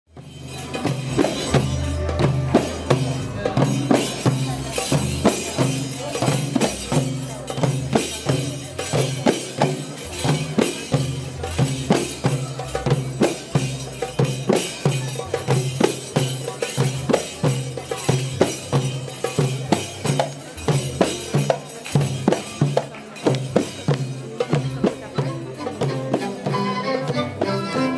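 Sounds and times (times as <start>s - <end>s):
drums beating: 0.1s - 27.9s
tambourine: 0.2s - 25.8s
bass notes: 0.4s - 6.0s.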